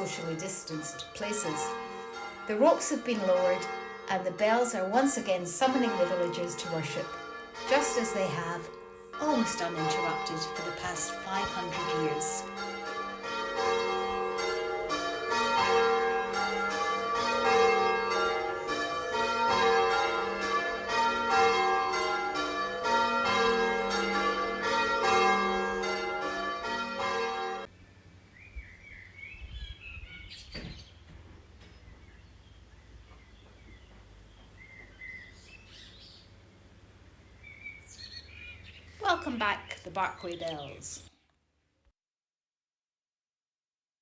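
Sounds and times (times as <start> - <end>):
church bells ringing: 0.0 - 27.7
faint birdsong: 27.7 - 36.4, 37.2 - 41.3.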